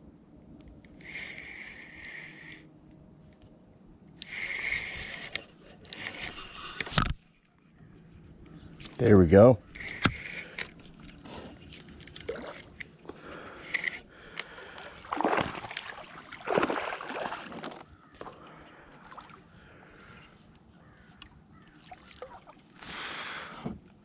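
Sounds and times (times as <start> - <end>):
water sloshing around a kayak: 9.8 - 13.2, 13.8 - 23.9
paddle swishes in water: 15.0 - 18.3.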